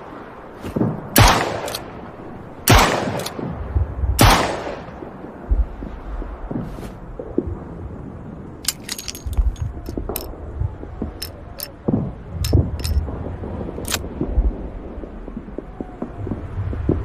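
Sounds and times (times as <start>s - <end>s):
revolver metallic clicks: 1.2s - 1.9s, 2.7s - 3.4s, 12.4s - 13.0s, 13.8s - 14.0s.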